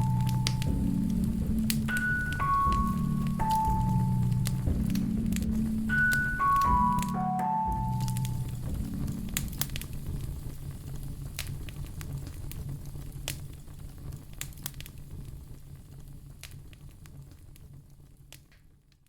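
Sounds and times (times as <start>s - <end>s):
low rumble: 0.0s - 13.2s
wood fire crackling: 0.0s - 19.0s.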